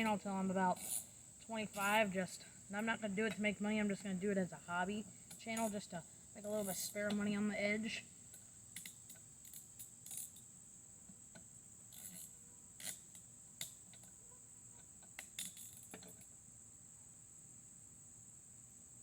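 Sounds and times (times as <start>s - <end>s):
crickets chirring: 0.0s - 19.0s
metallic clinks of tools: 8.3s - 10.5s, 15.2s - 16.3s.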